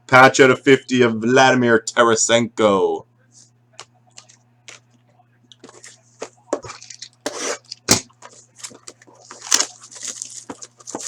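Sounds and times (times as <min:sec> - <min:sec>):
card packaging rustling: 0:05.6 - 0:11.0.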